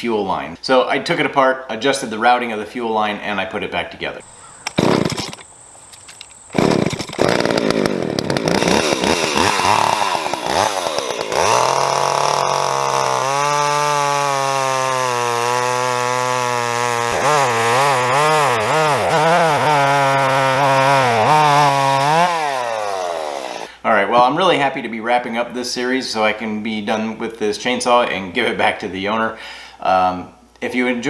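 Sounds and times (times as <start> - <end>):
chainsaw engine revving: 4.4 - 5.5, 6.5 - 23.7.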